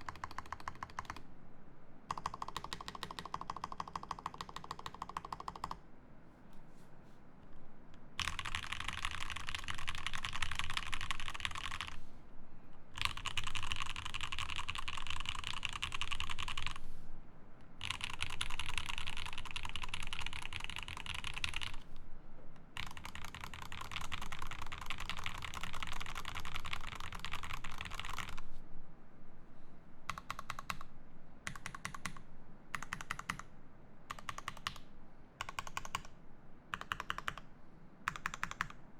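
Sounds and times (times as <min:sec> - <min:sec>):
mechanical keyboard typing: 0:00.0 - 0:01.2, 0:02.1 - 0:05.8, 0:08.2 - 0:12.0, 0:13.0 - 0:16.8, 0:17.8 - 0:21.9, 0:22.8 - 0:28.4, 0:30.1 - 0:30.9, 0:31.5 - 0:32.2, 0:32.8 - 0:33.5, 0:34.1 - 0:34.8, 0:35.4 - 0:36.1, 0:36.7 - 0:37.4, 0:38.1 - 0:38.8.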